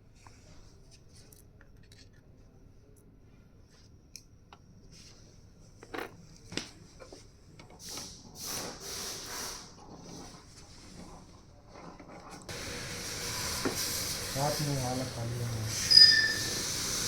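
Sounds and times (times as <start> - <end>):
hissing: 12.5 - 17.0.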